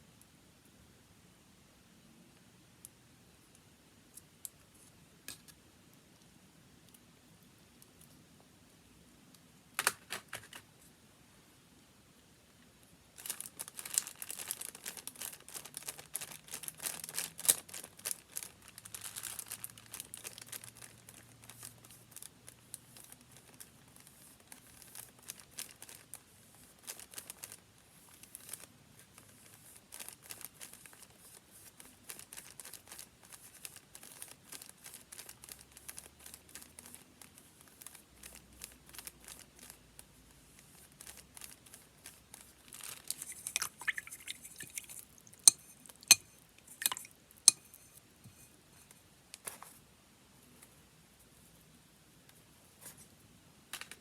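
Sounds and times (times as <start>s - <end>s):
paper crackling: 13.2s - 45.0s
paper crinkling and rustling: 13.2s - 45.0s.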